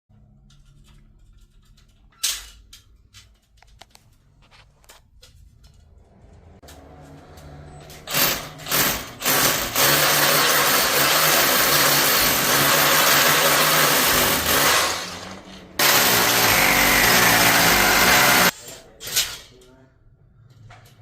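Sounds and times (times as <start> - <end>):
small power tool motor running: 15.8 - 18.5.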